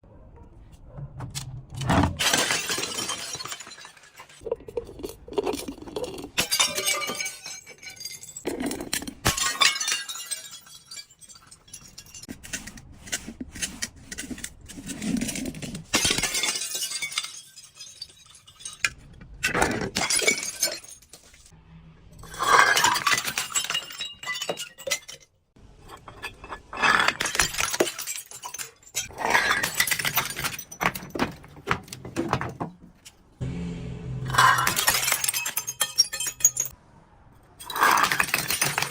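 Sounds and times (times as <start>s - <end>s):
glass bottles breaking: 2.2s - 4.4s, 5.6s - 12.3s, 15.8s - 21.5s, 22.2s - 32.4s, 34.3s - 36.8s, 37.6s - 38.9s.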